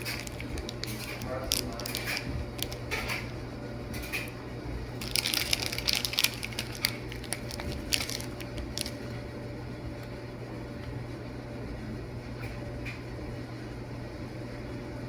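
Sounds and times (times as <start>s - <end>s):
crackling handling noises: 0.0s - 10.2s
steady low hum: 0.0s - 15.0s.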